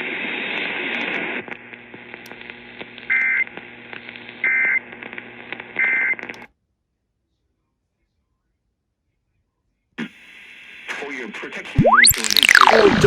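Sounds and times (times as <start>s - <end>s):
radio receiver hiss: 0.0s - 6.3s, 10.0s - 13.0s
electronic data tone bursts: 11.8s - 13.0s.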